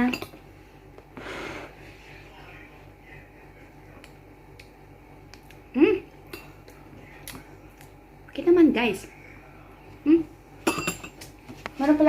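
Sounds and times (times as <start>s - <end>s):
low steady hum: 0.0s - 12.0s
person eating: 3.9s - 8.0s.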